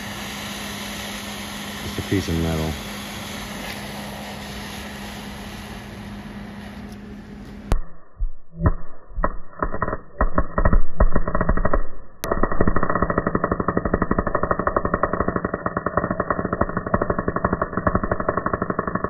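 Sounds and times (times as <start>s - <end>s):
fan hum: 0.0s - 7.8s
welding arc crackling: 0.0s - 7.8s, 8.6s - 19.0s.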